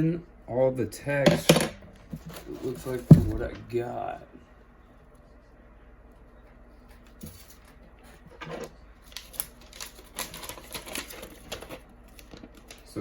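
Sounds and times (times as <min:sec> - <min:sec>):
paper rustling and crinkling: 0:07.2 - 0:13.0.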